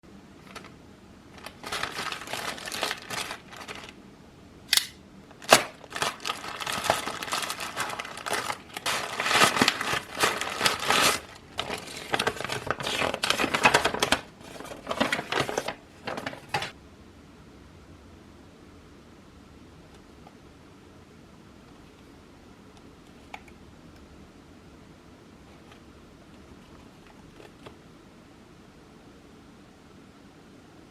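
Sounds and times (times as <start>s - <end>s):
packaging rustling and crinkling: 0.4s - 4.0s, 5.3s - 16.8s.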